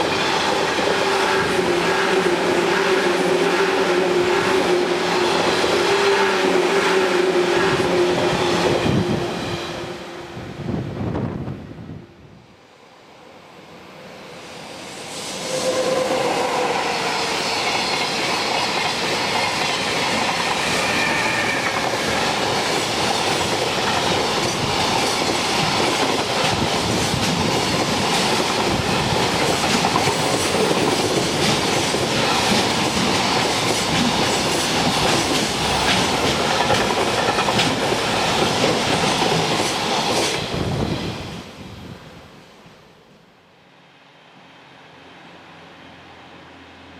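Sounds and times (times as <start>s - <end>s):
train passing at speed: 0.0s - 46.9s
train whine: 0.0s - 46.9s
wheels clacking over rail joints: 21.7s - 40.4s.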